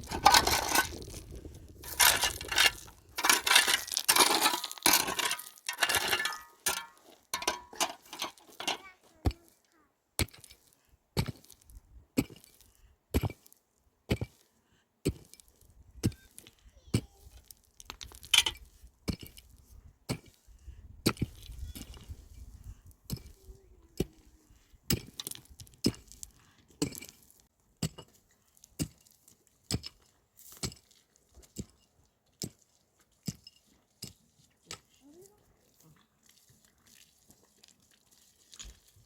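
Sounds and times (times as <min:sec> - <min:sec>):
rustling: 0:00.0 - 0:09.7
hand tool chopping: 0:01.8 - 0:09.4.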